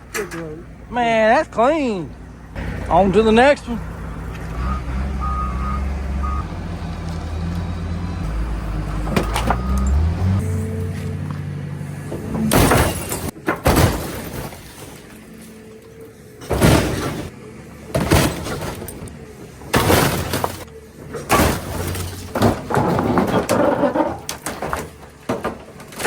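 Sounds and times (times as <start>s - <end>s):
crashes with breaking glass: 12.4s - 15.8s, 16.4s - 26.0s.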